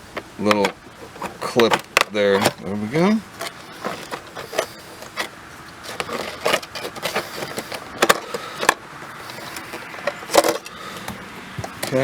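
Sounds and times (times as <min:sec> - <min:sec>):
plastic trim panel clicks and scrapes: 0:00.2 - 0:12.0.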